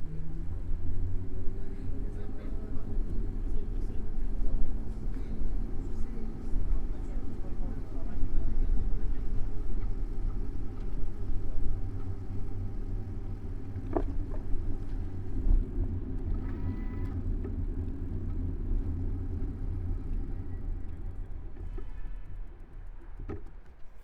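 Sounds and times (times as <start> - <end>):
bicycle road rumble: 0.0 - 24.0
vehicle traffic: 0.0 - 24.0
short tone: 16.5 - 17.1.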